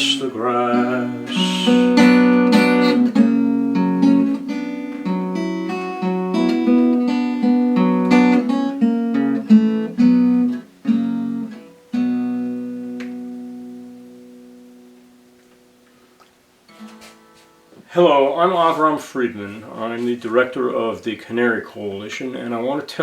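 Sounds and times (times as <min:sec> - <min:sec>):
acoustic guitar strumming chords: 0:00.0 - 0:17.9.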